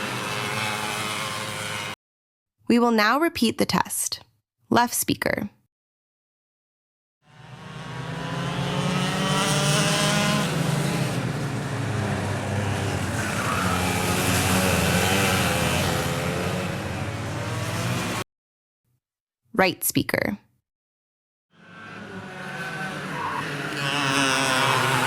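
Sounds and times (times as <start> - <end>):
racing engine revving: 0.0 - 2.0, 7.3 - 18.2, 21.6 - 25.0.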